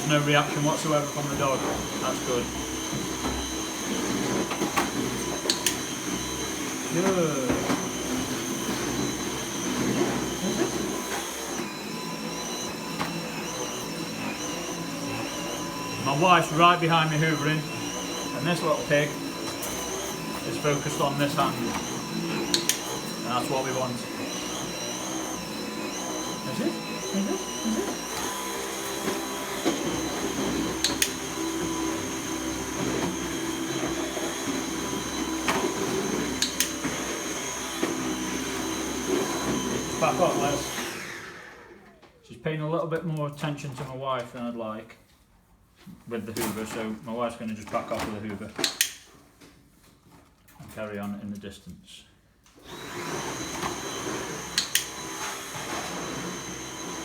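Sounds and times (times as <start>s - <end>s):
vacuum cleaner motor whine: 0.0s - 42.3s, 52.6s - 57.0s.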